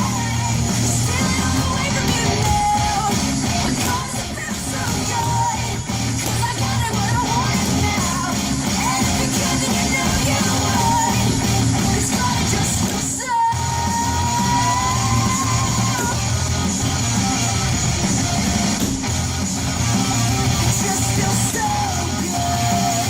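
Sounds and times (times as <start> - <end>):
loud rock music: 0.0 - 23.0.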